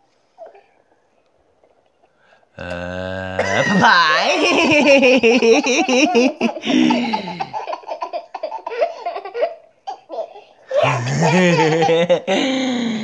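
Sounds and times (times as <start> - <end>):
adult voice: 2.6 - 4.8
baby laughing: 3.4 - 12.3.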